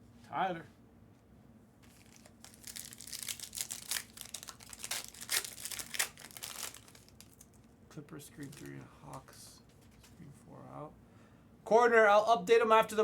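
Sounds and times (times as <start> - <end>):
foil wrapper crinkling and tearing: 1.8 - 7.7, 8.3 - 8.8.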